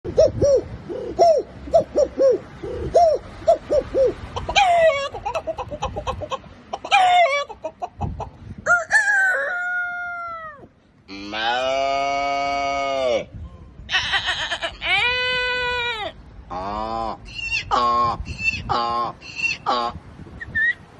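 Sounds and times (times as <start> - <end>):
man imitating chicken clucks: 0.1 - 20.8
rooster-like crows: 8.6 - 10.7.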